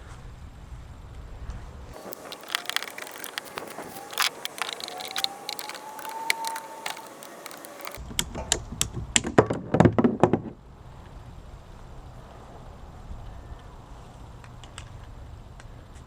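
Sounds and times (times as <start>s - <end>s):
plastic pipe fittings clicking: 2.0s - 8.0s.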